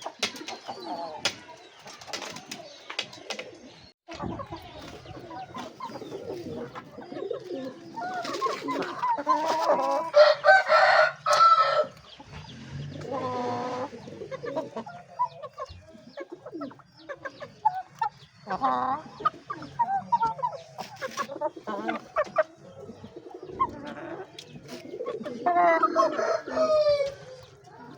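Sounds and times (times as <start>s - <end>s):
chickens clucking: 0.0s - 27.9s
rooster crowing: 10.1s - 12.0s, 25.7s - 27.4s.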